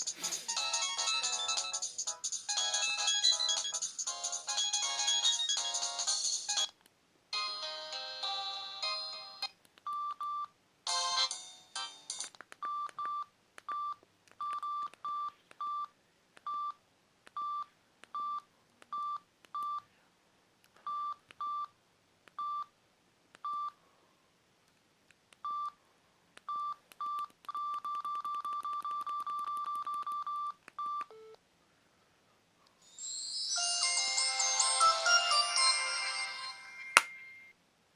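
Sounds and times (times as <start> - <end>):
ringtone melody: 0.0 - 6.7, 7.4 - 9.5, 10.9 - 12.3, 32.8 - 37.4
phone keypad beeps: 12.6 - 15.9, 25.4 - 25.8, 26.5 - 31.4.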